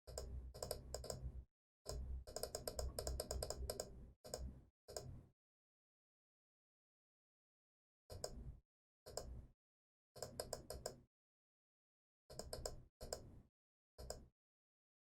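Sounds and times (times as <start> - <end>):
keyboard and mouse clicking: 0.1 - 1.3, 1.9 - 5.1, 10.2 - 11.0, 12.3 - 13.3, 14.0 - 14.3.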